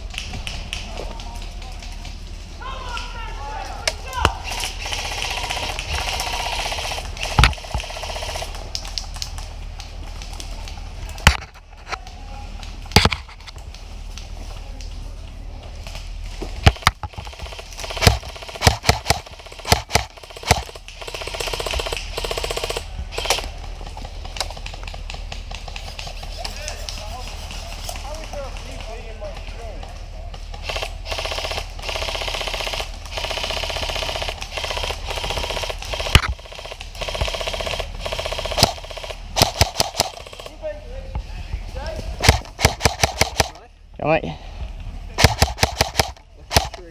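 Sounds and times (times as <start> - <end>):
wind rumble: 0.0 - 8.0
sharp crack: 16.0 - 27.2, 30.5 - 40.6, 42.2 - 43.7, 45.1 - 46.9
airsoft gun shots: 16.6 - 23.5, 30.6 - 40.4, 42.2 - 43.6, 45.2 - 46.9.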